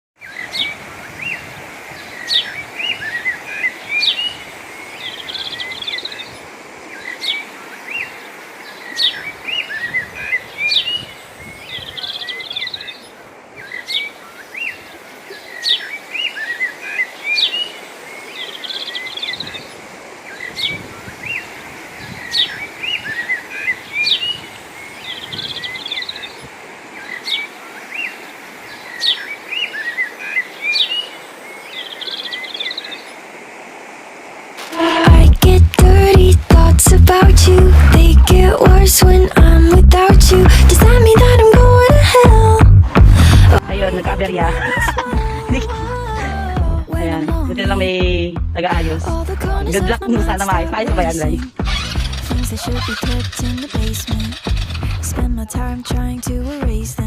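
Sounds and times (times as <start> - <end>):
birds chirping and twittering: 0.2 - 35.1, 49.8 - 55.1.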